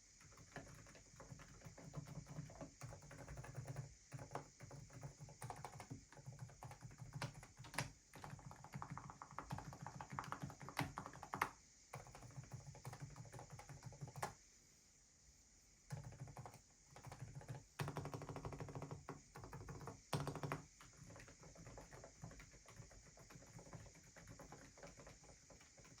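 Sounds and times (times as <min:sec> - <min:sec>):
typing on mechanical keyboard: 0:00.2 - 0:14.4, 0:15.9 - 0:26.0.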